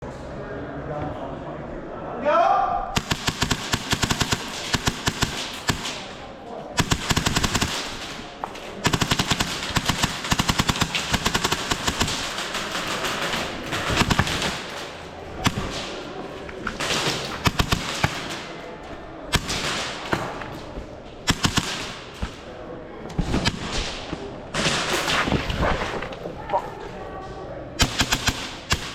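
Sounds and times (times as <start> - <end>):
airsoft guns full-auto bursts: 3.0 - 18.6, 21.2 - 22.4, 27.8 - 28.9.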